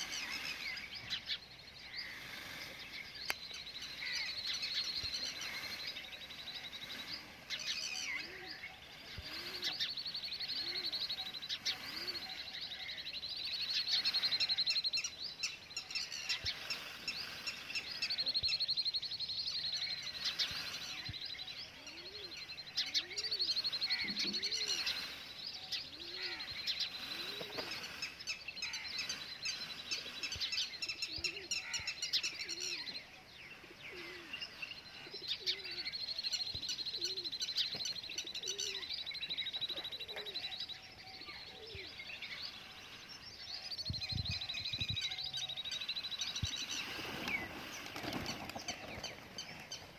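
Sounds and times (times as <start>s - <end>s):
small birds chirping: 0.0s - 49.9s
doves cooing: 3.7s - 12.9s, 20.0s - 30.4s, 33.6s - 40.6s, 45.0s - 49.9s.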